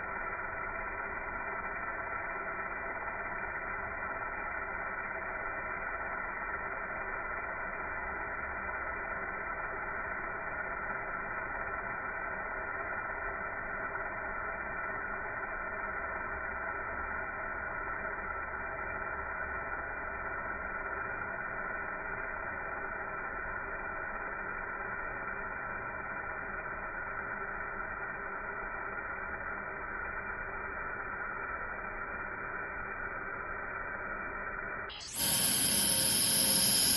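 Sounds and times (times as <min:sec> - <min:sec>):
welding machine hum and hiss: 0:00.0 - 0:36.9
constant whining tones: 0:31.9 - 0:36.9.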